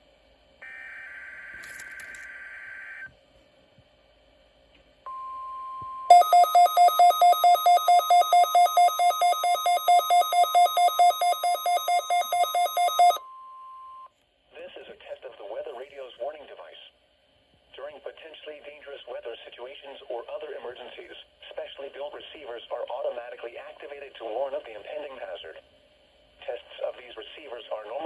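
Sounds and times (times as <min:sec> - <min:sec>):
rapid pulsing beeps: 0:06.1 - 0:13.2
steady alarm tone: 0:06.1 - 0:13.2
warbling data tones: 0:06.1 - 0:13.2.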